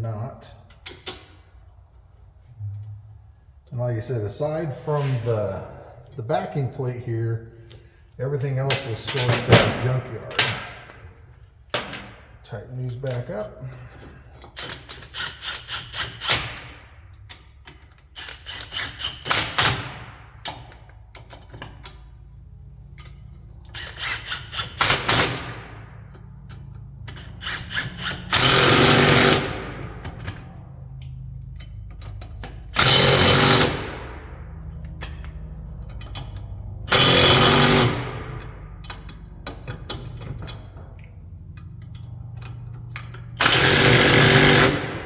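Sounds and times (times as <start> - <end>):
impact wrench bursts: 13.8 - 22.0, 23.0 - 40.8, 41.8 - 45.0
power tool rapid clicking: 23.8 - 25.6, 27.4 - 30.0, 32.7 - 34.3, 36.9 - 38.6, 43.4 - 45.0.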